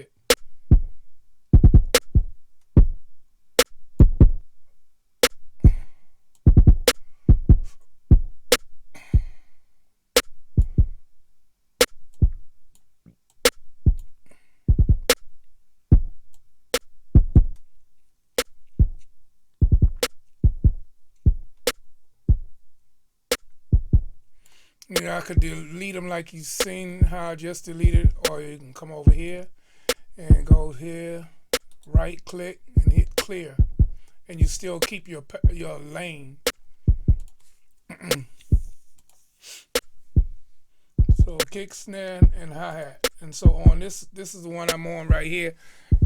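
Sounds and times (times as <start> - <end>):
deep kick drums: 0.7 - 3.0, 4.0 - 4.4, 6.5 - 8.4, 10.6 - 11.0, 14.7 - 15.1, 17.1 - 17.6, 19.6 - 21.6, 23.7 - 24.2, 25.4 - 25.6, 27.0 - 27.2, 27.8 - 28.3, 29.1 - 29.4, 30.3 - 30.7, 31.9 - 34.6, 36.9 - 37.2, 40.2 - 41.5, 42.2 - 42.6, 43.4 - 43.9, 45.1 - 45.3
sharp snare hits: 27.9 - 28.4, 33.1 - 33.4, 41.3 - 41.6.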